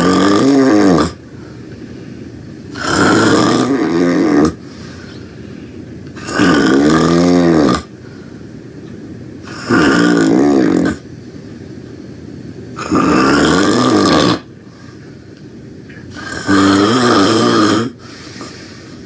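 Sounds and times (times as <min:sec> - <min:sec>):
loud rough snoring: 0:00.0 - 0:01.2, 0:02.7 - 0:04.6, 0:06.2 - 0:07.9, 0:09.4 - 0:11.0, 0:12.8 - 0:14.5, 0:16.1 - 0:18.0.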